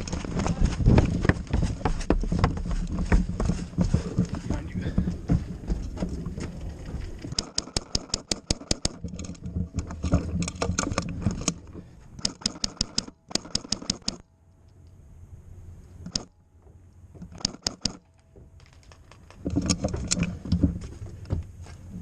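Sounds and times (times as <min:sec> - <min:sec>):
handling noise: 0:00.0 - 0:14.2, 0:16.0 - 0:22.0
airsoft gun shots: 0:07.4 - 0:09.0.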